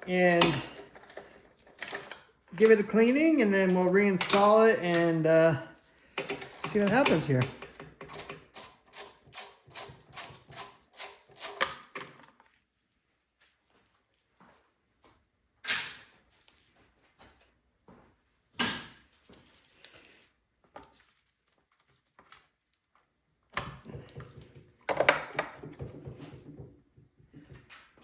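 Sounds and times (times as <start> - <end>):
hand tools knocking and clattering: 0.0 - 3.0, 4.1 - 5.5, 6.2 - 9.9.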